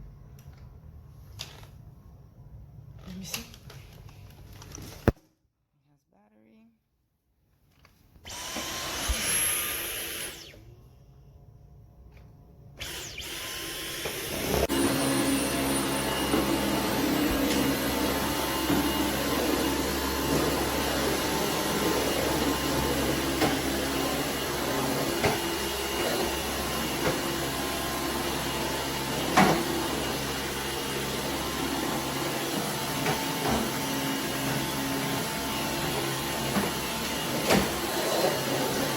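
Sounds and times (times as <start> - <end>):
stick vacuum running: 8.2 - 10.7, 12.8 - 38.9.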